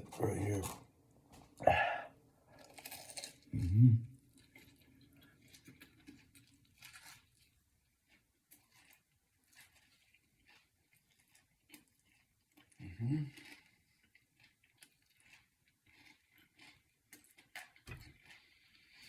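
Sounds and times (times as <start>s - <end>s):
chewing crispy food: 0.0s - 19.0s
person grunting: 1.6s - 2.1s.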